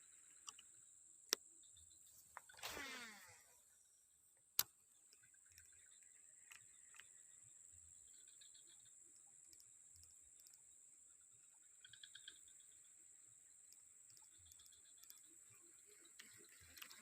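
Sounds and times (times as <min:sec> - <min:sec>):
soft ticks: 0:00.4 - 0:01.4, 0:04.6 - 0:07.4, 0:08.1 - 0:10.8, 0:13.5 - 0:17.0.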